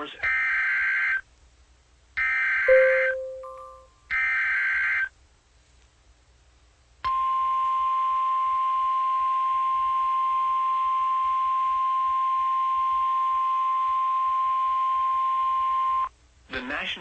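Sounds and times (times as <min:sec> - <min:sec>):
steady high alarm tone: 0:02.7 - 0:03.8.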